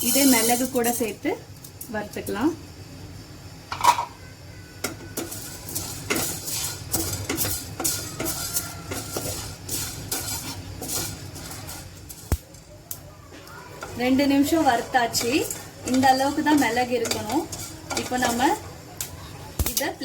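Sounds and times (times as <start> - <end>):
spatula scraping pan: 0.0 - 1.1, 4.8 - 12.6, 13.7 - 19.5
clatter in pan: 4.8 - 12.6, 13.8 - 19.9.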